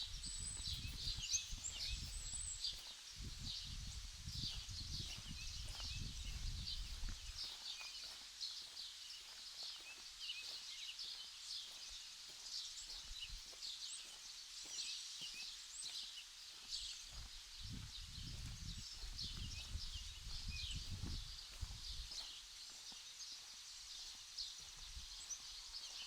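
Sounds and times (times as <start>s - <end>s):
wind rumble on microphone: 0.0s - 7.6s, 17.1s - 22.2s
small birds chirping: 0.0s - 26.0s.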